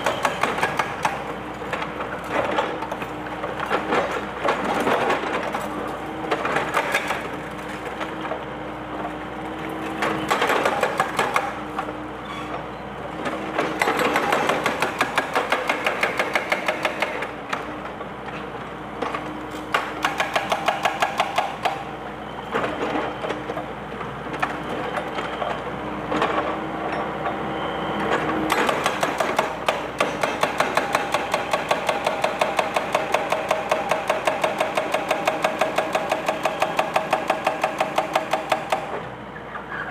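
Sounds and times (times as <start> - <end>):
hydraulic breaker hammering concrete: 0.0 - 2.8, 10.0 - 11.6, 13.5 - 17.6, 19.7 - 21.8, 28.5 - 39.0.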